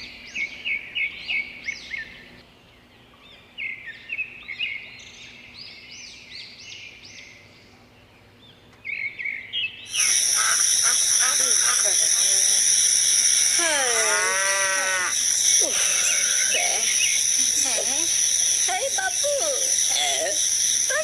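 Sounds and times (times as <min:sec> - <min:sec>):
birds chirping: 0:00.0 - 0:21.0
loud hissing whir: 0:09.9 - 0:21.0.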